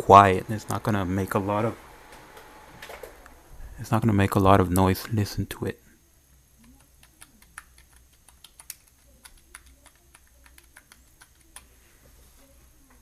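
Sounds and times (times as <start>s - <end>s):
keypad keys clicking: 6.6s - 11.7s.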